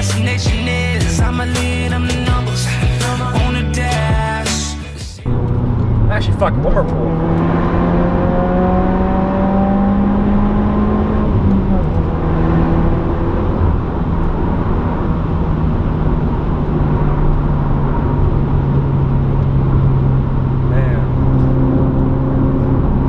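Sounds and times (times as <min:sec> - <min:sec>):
car engine accelerating: 0:05.2 - 0:23.0.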